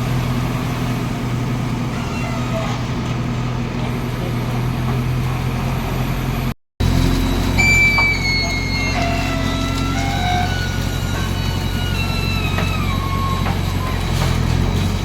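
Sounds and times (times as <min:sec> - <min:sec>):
diesel engine running: 0:00.0 - 0:15.0
high thin squealing: 0:06.9 - 0:15.0.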